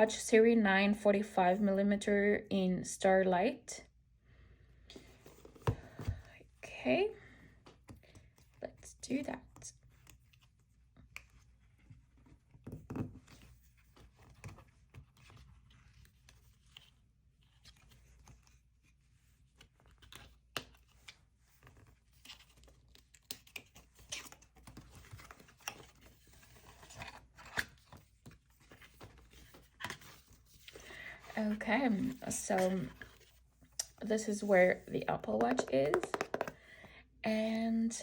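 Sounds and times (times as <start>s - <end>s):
small clicks and taps: 35.4s - 36.6s.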